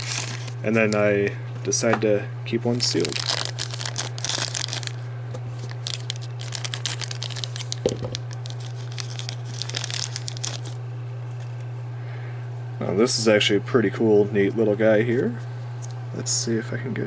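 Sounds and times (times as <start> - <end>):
packaging torn and crinkled: 0.0 - 1.0, 2.8 - 5.0, 5.6 - 10.8.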